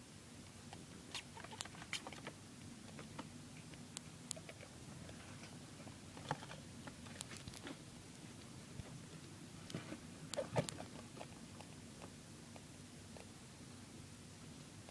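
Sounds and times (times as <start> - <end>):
faint steady hum: 0.0 - 14.9
rats scurrying and scratching: 0.6 - 9.0.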